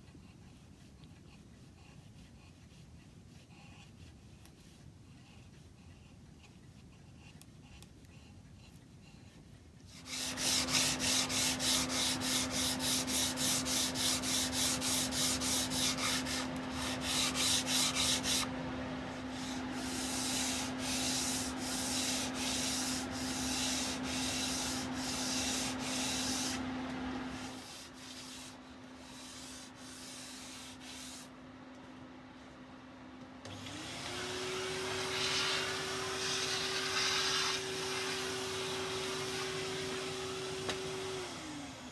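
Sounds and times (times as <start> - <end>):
hand sanding wood: 9.9 - 31.3, 34.2 - 41.3.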